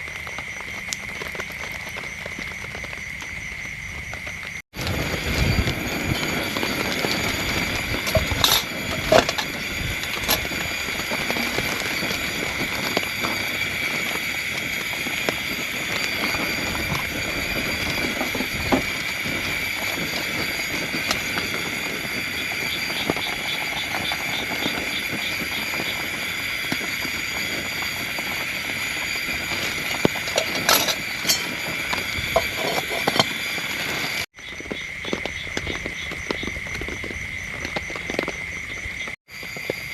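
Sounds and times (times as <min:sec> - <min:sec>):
steady rain falling: 0:04.2 - 0:32.4.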